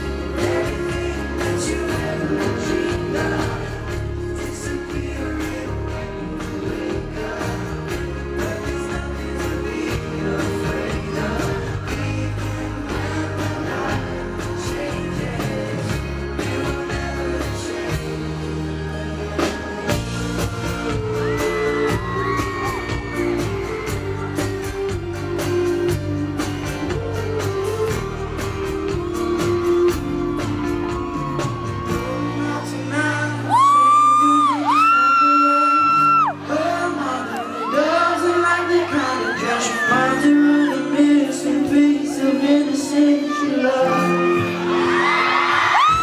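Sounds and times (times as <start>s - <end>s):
live pop band with singing: 0.0s - 46.0s
crowd whooping and shouting: 13.2s - 46.0s.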